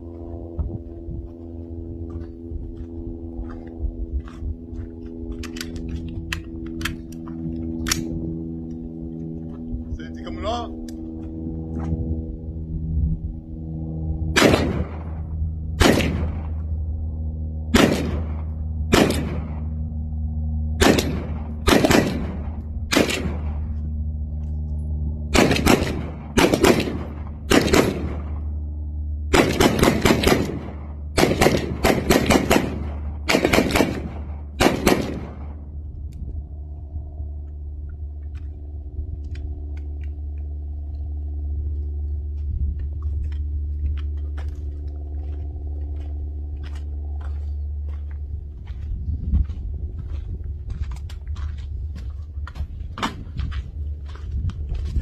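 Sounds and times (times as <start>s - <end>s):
steady low hum: 0.0s - 55.0s
gunshots: 14.3s - 16.6s, 17.7s - 19.8s, 20.8s - 23.7s, 25.3s - 28.4s, 29.3s - 35.6s.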